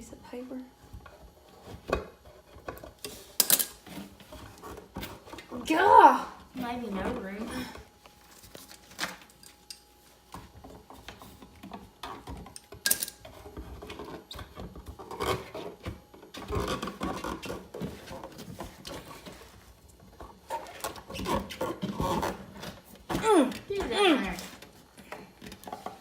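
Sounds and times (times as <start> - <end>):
wires scraping in electrical box: 20.2 - 22.8.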